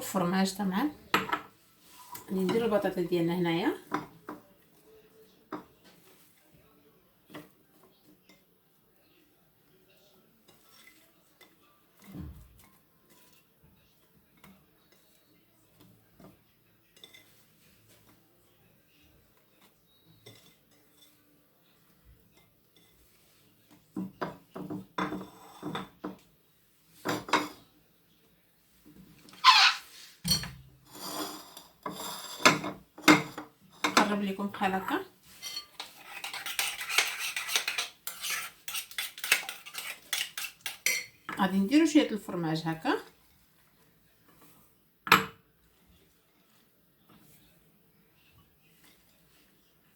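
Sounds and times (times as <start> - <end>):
utensil clinking and scraping dish: 10.4 - 18.2, 19.3 - 26.3, 27.0 - 27.7, 29.1 - 41.7.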